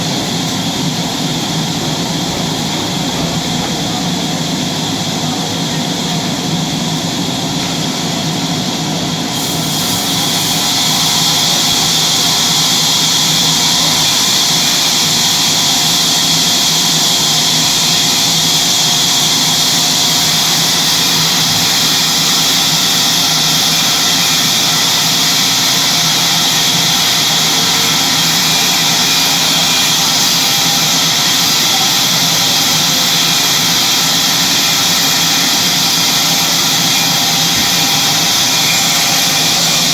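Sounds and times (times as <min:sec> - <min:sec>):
sawmill saw cutting wood: 0:09.2 - 0:39.9.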